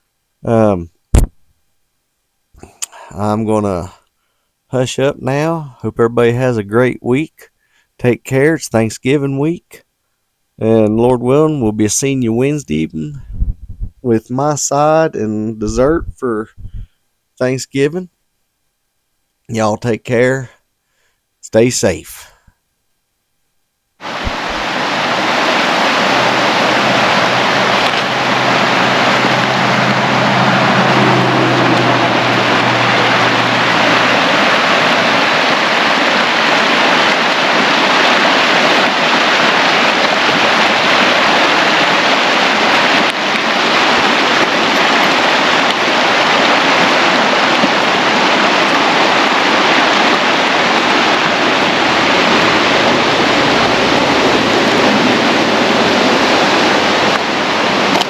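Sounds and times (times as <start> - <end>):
road and wind noise: 24.0 - 58.0
low engine hum: 24.2 - 35.7.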